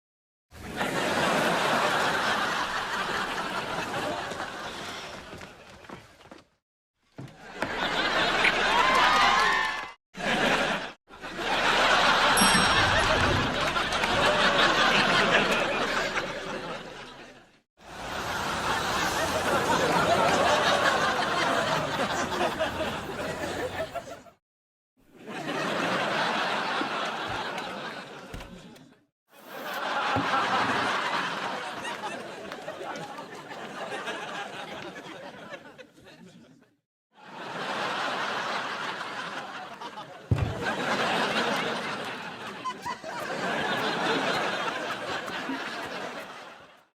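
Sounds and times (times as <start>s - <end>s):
audience laughter: 0.6s - 6.4s, 7.3s - 24.4s, 25.2s - 46.9s
studio audience oooh reaction: 8.6s - 9.9s
studio audience oohing: 17.9s - 24.3s.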